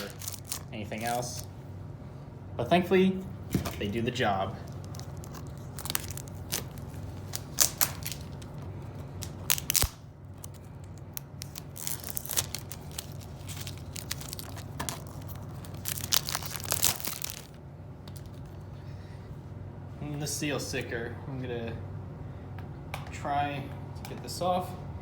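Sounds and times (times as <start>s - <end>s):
plastic shrink-wrap crinkling and ripping: 0.0s - 1.5s, 4.6s - 17.6s.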